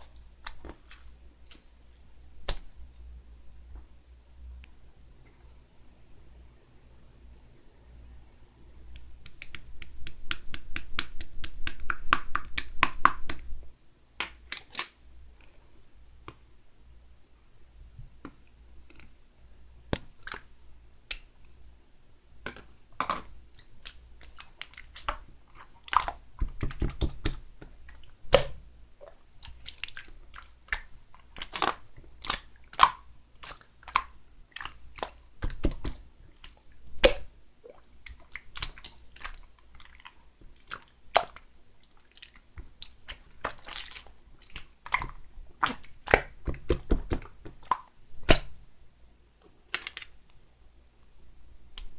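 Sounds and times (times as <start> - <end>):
slime squished by hand: 29.4 - 48.6, 49.6 - 50.2.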